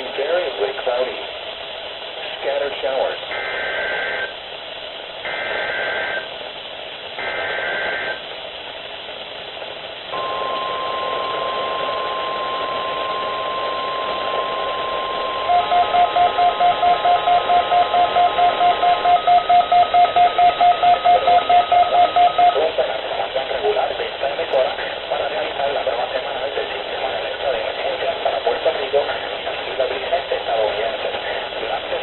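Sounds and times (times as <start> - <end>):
radio speaker hiss: 0.0 - 32.0
pulsing electronic beep: 10.2 - 22.6
steady alert tone: 10.2 - 22.6.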